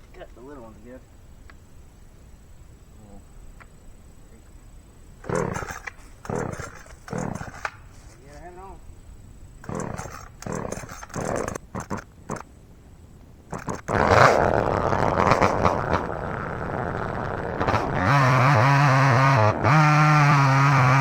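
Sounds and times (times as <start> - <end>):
chainsaw running: 9.6 - 12.4, 13.5 - 21.0.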